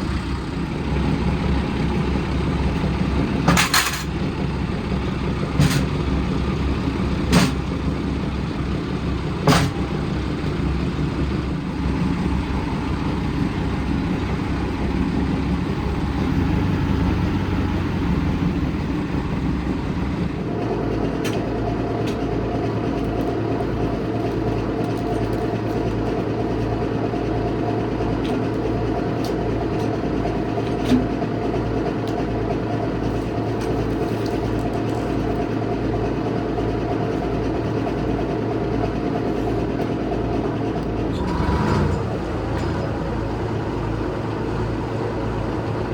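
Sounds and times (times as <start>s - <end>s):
large engine running: 0.0s - 45.9s.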